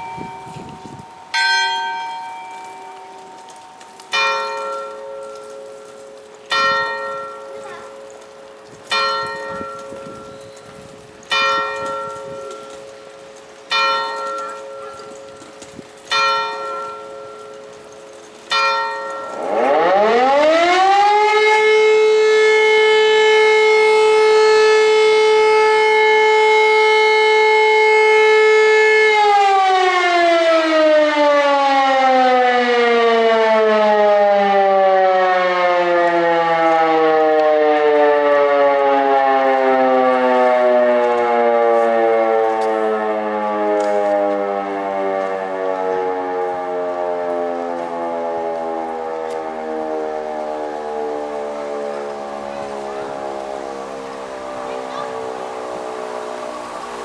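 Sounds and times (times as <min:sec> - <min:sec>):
bell striking: 0:00.0 - 0:05.4
electromechanical siren: 0:00.0 - 0:06.3, 0:16.6 - 0:57.0.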